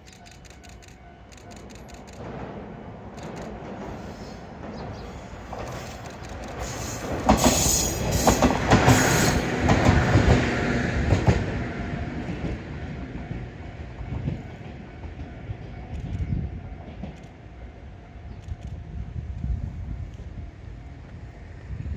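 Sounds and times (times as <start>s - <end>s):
train wheels clacking over rail joints: 0.0s - 13.0s.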